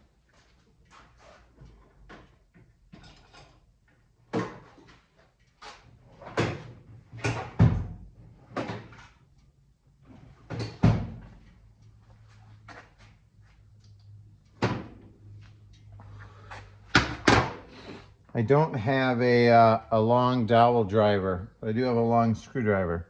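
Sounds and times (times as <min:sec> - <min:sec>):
tools clattering: 0:02.9 - 0:03.7
drawers and cabinet doors shutting: 0:06.2 - 0:09.1, 0:10.4 - 0:11.4, 0:14.6 - 0:15.0, 0:16.9 - 0:17.8.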